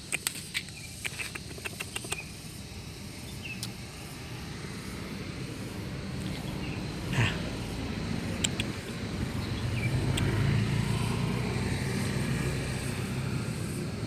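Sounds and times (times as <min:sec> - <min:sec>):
sharp clicks: 0:00.0 - 0:02.3, 0:08.3 - 0:08.8
passing motor vehicle hum: 0:02.2 - 0:14.0.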